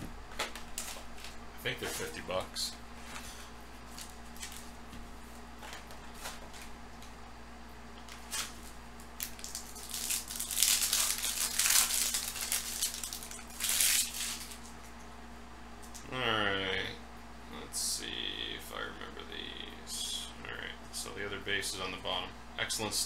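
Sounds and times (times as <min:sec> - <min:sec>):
plastic wrapping crinkling and tearing: 0:00.3 - 0:01.4, 0:08.0 - 0:14.8.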